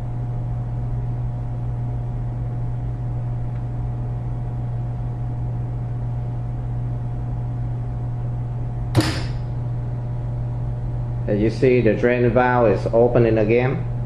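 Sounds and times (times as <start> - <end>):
dishwasher humming: 8.8 - 9.7.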